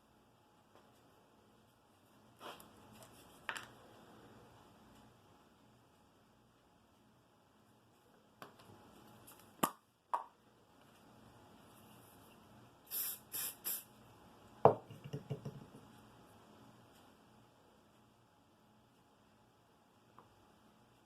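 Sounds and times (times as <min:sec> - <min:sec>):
short hissing spurts: 0:12.9 - 0:13.9.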